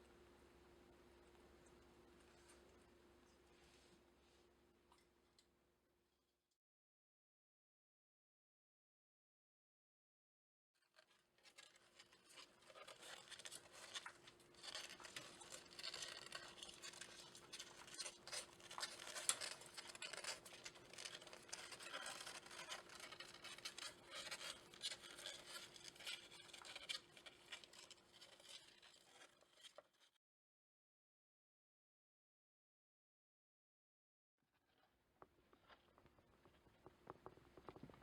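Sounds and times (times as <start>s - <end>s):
faint rustling and scratching: 1.0s - 5.1s, 10.8s - 30.2s, 34.6s - 38.0s.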